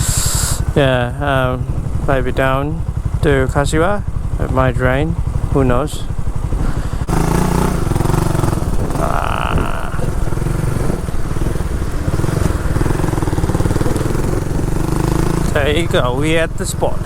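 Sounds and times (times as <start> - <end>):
motorcycle engine running: 0.0 - 17.0
wind noise on microphone: 6.5 - 13.3.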